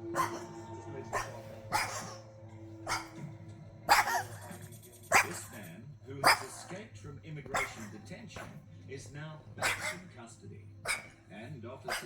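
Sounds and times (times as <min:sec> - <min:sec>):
cat coughing: 0:09.6 - 0:10.0.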